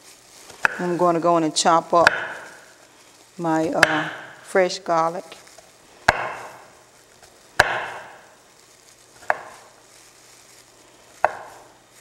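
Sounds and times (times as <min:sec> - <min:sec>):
knife chopping on cutting board: 0:00.6 - 0:01.0, 0:02.0 - 0:02.6, 0:03.7 - 0:04.4, 0:06.0 - 0:06.7, 0:07.6 - 0:08.3, 0:09.2 - 0:09.7, 0:11.2 - 0:11.7.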